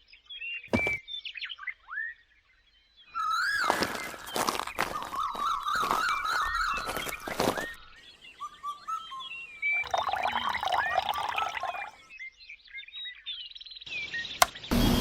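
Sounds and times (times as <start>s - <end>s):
birds chirping: 0.7s - 1.0s, 3.1s - 12.1s.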